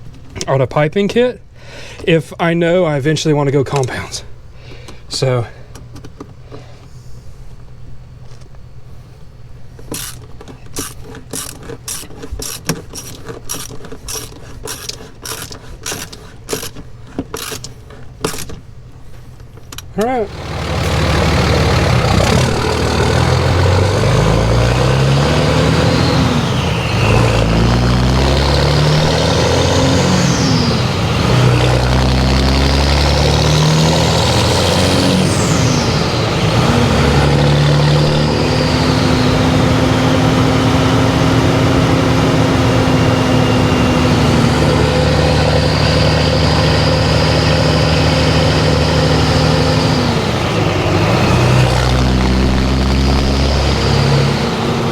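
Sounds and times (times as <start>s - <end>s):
diesel engine accelerating: 20.2s - 54.9s.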